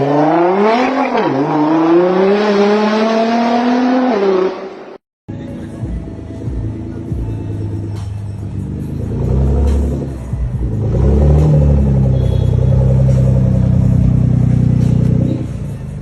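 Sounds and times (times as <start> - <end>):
car engine revving: 0.0 - 5.0, 7.5 - 16.0.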